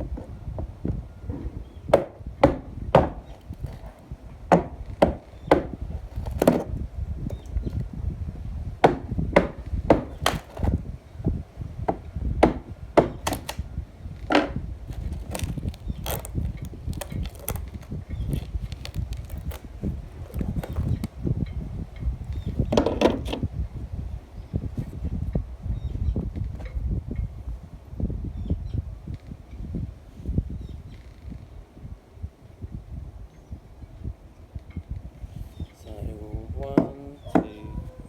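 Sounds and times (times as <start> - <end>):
hand tool knocking wood: 1.9 - 3.9, 4.5 - 6.7, 8.8 - 10.8, 11.9 - 13.6, 36.7 - 37.6.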